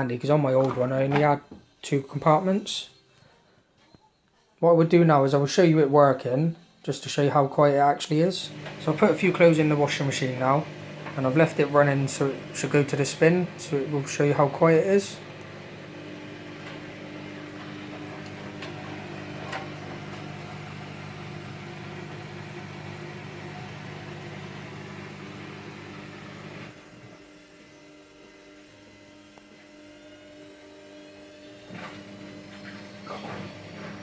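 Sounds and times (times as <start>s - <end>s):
washing machine motor hum: 8.2s - 34.0s.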